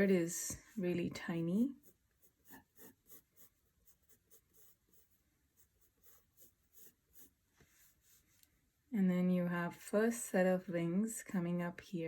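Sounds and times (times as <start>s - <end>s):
pencil scratching on paper: 0.0s - 8.4s.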